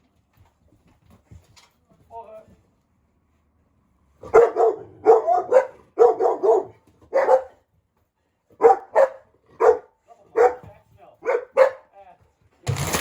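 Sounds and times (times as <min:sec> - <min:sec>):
dog barking: 0:04.2 - 0:07.6, 0:08.6 - 0:11.9.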